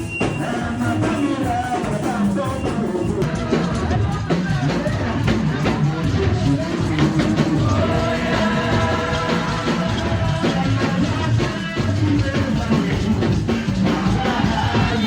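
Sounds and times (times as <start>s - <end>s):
upbeat song with singing: 0.0s - 15.0s.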